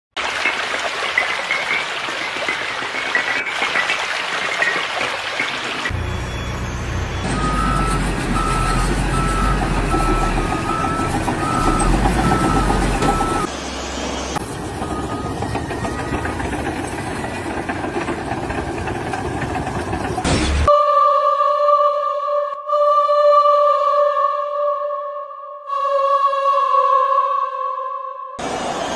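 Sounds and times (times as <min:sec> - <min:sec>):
heavy vehicle engine rumbling: 0:05.8 - 0:20.7
reversing alarm beeping: 0:05.9 - 0:17.4
hissing machine noise: 0:28.4 - 0:28.9.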